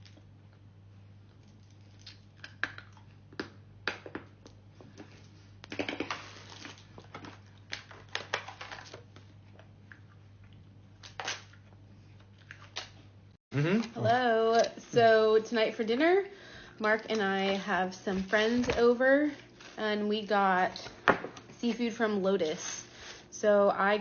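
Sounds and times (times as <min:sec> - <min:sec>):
person chewing crunchy food: 0:01.2 - 0:03.5.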